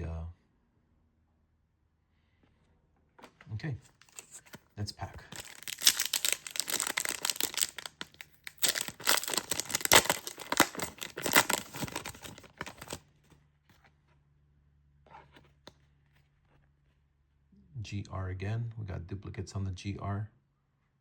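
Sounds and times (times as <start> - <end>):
wrapper tearing and crinkling: 5.3 - 13.0.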